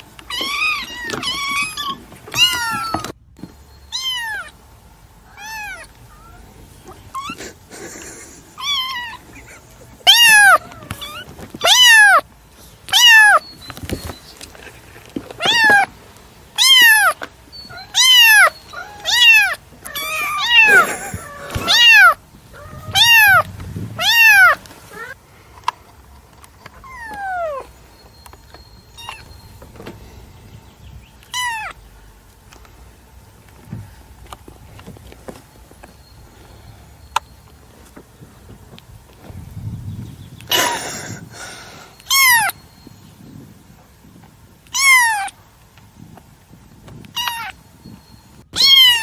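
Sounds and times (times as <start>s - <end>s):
cat meowing: 0.3s - 3.1s, 3.9s - 4.6s, 5.3s - 6.4s, 8.6s - 9.3s, 10.0s - 12.2s, 12.9s - 13.5s, 15.4s - 15.9s, 16.6s - 25.2s, 26.8s - 27.7s, 31.3s - 31.8s, 42.0s - 42.6s, 44.7s - 45.3s, 47.1s - 47.6s, 48.6s - 49.0s.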